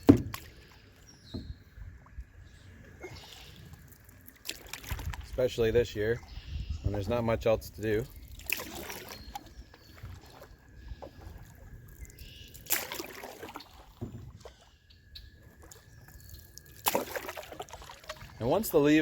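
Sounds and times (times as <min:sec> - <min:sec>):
paddle splashing in water: 0:00.0 - 0:02.1, 0:02.7 - 0:05.5, 0:08.1 - 0:19.0
water dripping from paddle: 0:00.0 - 0:02.2, 0:02.8 - 0:05.4, 0:07.9 - 0:18.8.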